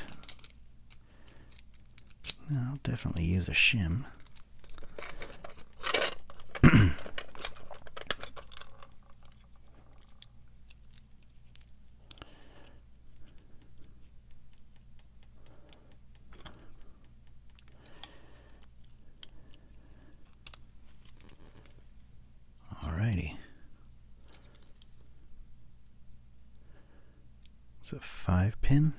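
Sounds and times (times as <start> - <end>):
small metal lock clicks and rattles: 0.0 - 2.4, 4.2 - 11.8.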